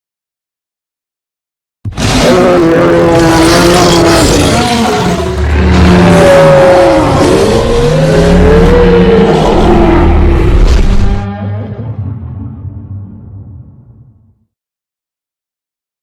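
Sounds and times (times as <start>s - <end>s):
monster roar: 1.9s - 12.3s
deep rumble: 3.3s - 14.5s.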